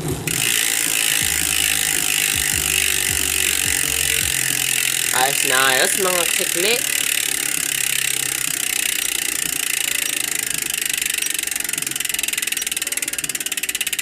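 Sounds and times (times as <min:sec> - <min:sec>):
bike hub ratchet clicking: 0:00.0 - 0:14.0.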